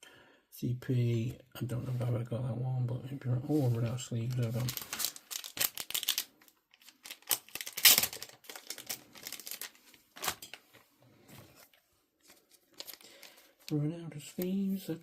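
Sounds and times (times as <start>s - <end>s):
plastic crinkling and rustling: 3.5s - 15.0s.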